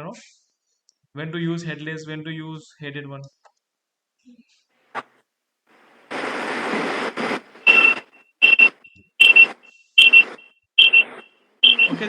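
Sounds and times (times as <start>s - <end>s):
burst of hiss: 5.8s - 12.0s
high electronic beeps: 7.6s - 12.0s.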